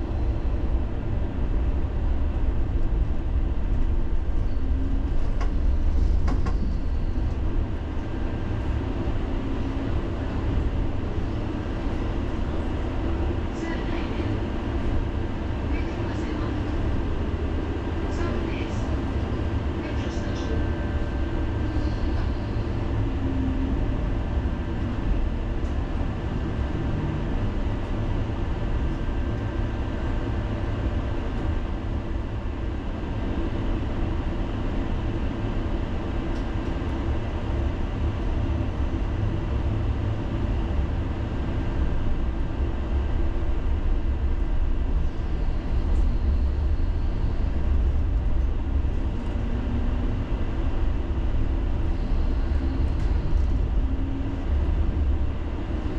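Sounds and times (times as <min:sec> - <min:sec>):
faint constant hum: 0:00.0 - 0:55.9
tram rumbling on rails: 0:00.0 - 0:55.9.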